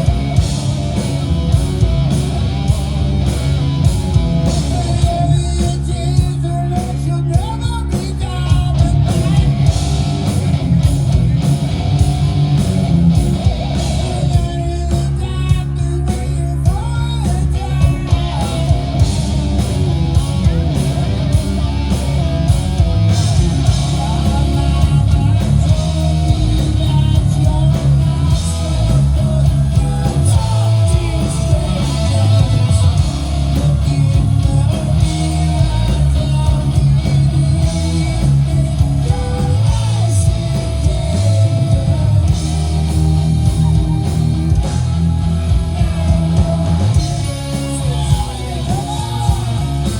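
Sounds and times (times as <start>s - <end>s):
drums: 0.0s - 49.9s
electric guitar: 0.0s - 49.9s
person singing: 23.1s - 49.9s.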